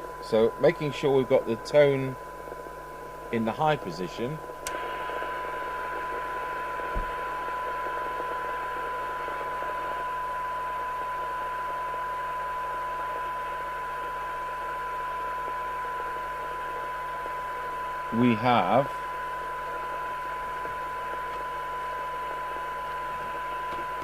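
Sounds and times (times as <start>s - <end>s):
steady test tone: 0.0s - 12.7s, 14.8s - 24.0s
radio hiss: 0.1s - 10.2s, 16.4s - 24.0s
faint low thump: 6.9s - 7.2s.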